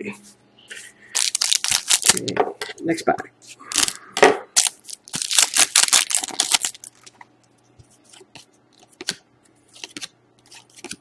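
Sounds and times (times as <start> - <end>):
cards rustling and clicking: 1.2 - 2.3, 4.6 - 7.2, 7.8 - 11.0
wrapper ripping and crinkling: 1.2 - 2.3, 3.7 - 4.0, 4.6 - 7.1.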